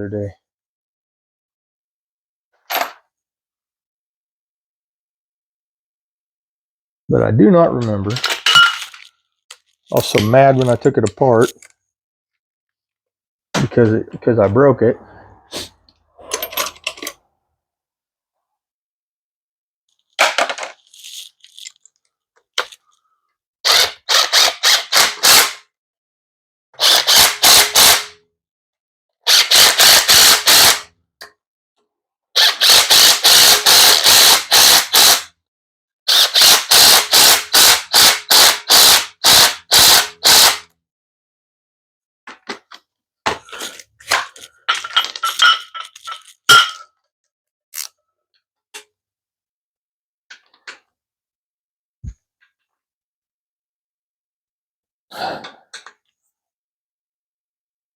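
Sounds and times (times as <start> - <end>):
brief metal scrape: 15.5 - 16.8.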